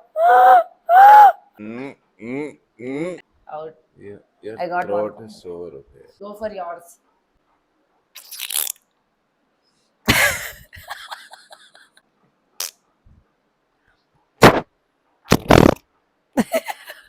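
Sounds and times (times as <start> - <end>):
person spitting and throat noises: 8.2 - 8.8, 12.6 - 12.8, 15.3 - 15.8.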